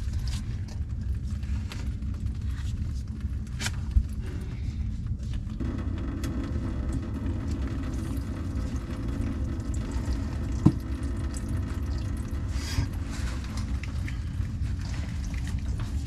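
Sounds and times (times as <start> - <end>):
water running from pipe: 5.6 - 16.0.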